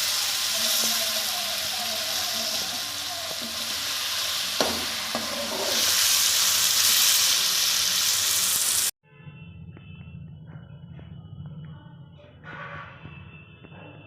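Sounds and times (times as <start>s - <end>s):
food sizzling in a pan: 0.0s - 9.0s
spoon knocking: 4.6s - 5.8s.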